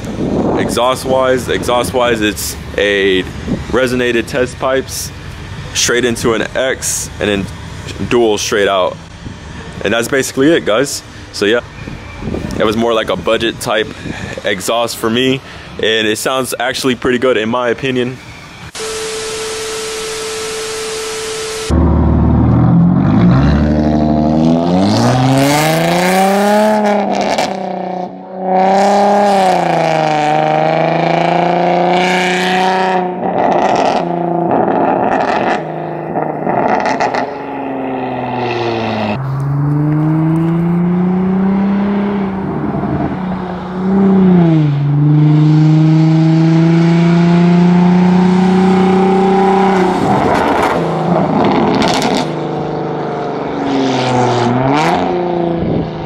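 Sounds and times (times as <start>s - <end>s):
car engine revving: 18.2s - 56.0s
exhaust crackling: 19.8s - 56.0s.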